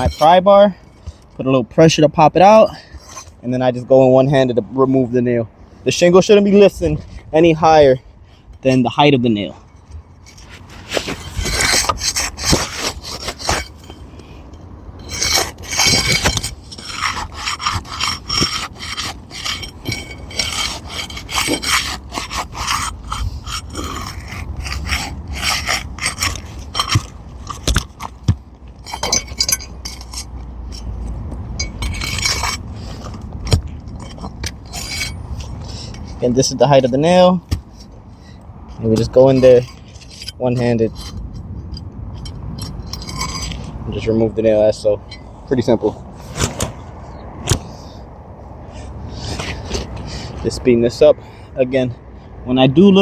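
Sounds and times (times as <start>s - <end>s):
pry bar scraping roof shingles: 0.0s - 3.9s, 9.9s - 14.4s, 15.0s - 41.5s, 48.8s - 50.6s.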